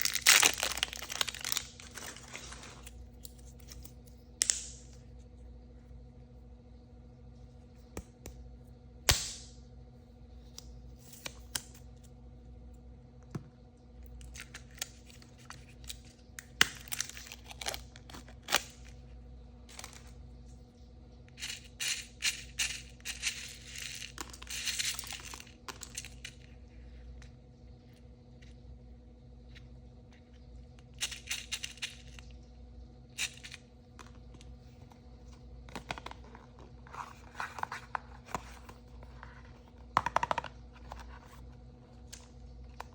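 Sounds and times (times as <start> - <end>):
plastic and foil wrappers crinkling: 0.0 - 3.6.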